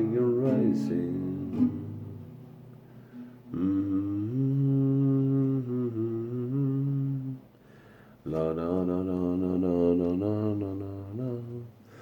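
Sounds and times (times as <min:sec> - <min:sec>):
acoustic guitar: 0:00.0 - 0:12.0
man humming: 0:03.5 - 0:07.4.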